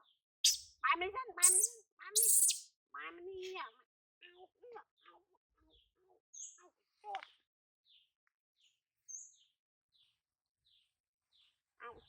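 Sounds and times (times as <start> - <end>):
baby chicks peeping: 0.5 - 0.7, 1.4 - 2.6.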